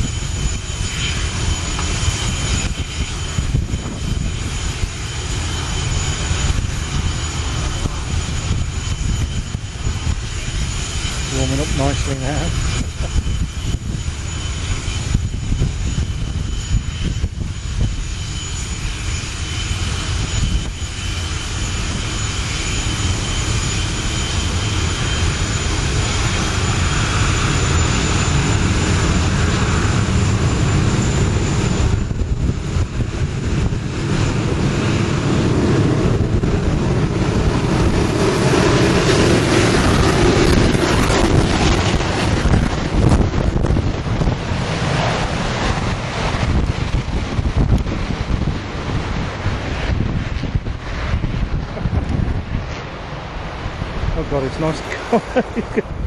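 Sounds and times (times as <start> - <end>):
jet engines running: 0.0 - 56.0.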